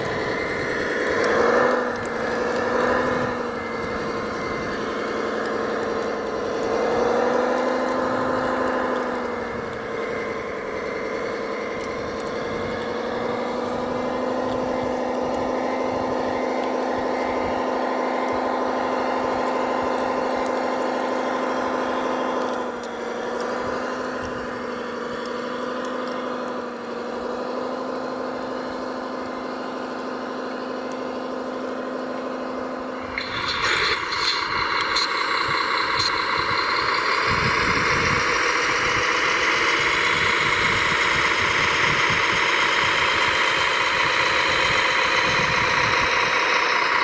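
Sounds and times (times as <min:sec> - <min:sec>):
engine revving: 0:00.0 - 0:47.0
simulated diesel engine idling: 0:00.0 - 0:47.0.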